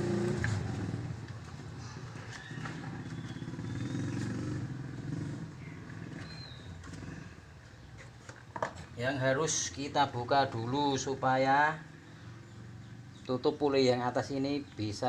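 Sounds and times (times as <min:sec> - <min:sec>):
motorcycle engine running: 0:00.0 - 0:07.8.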